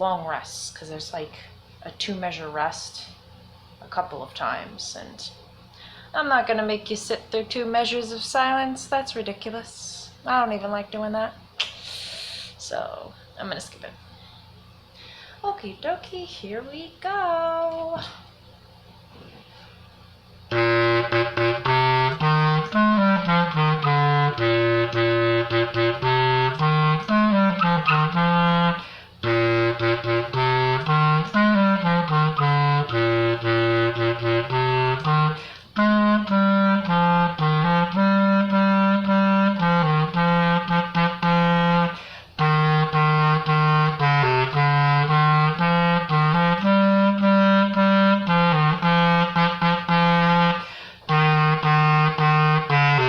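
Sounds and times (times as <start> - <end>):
player breathing: 11.8 - 12.6, 14.2 - 15.4, 50.6 - 51.1
low wind instrument melody: 20.4 - 53.0.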